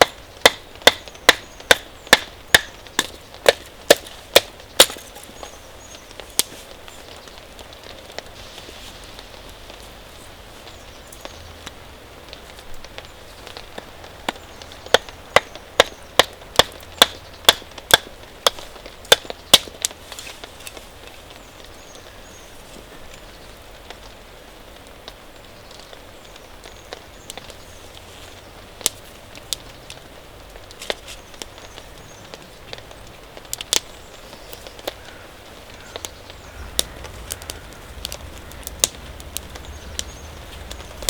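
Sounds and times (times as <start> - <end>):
wood being chopped: 0.0 - 5.6, 14.3 - 20.0, 36.0 - 41.0
steady background hiss: 0.0 - 41.0.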